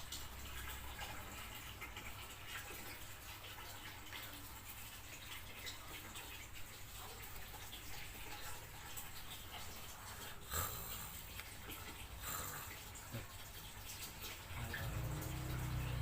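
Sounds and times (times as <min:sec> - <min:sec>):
animal snoring faintly: 0:10.4 - 0:11.3, 0:12.2 - 0:13.3, 0:14.6 - 0:16.0.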